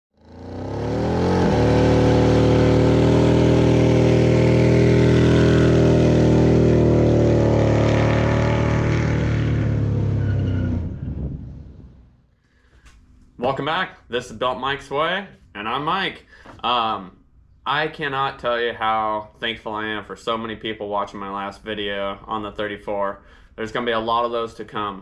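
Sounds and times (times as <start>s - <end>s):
pickup truck engine running: 0.3s - 10.1s.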